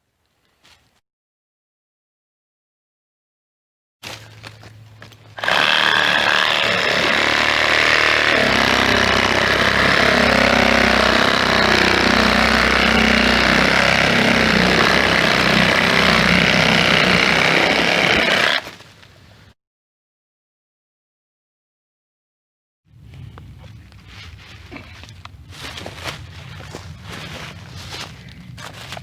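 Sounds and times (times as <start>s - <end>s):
power saw cutting wood: 5.4s - 18.8s.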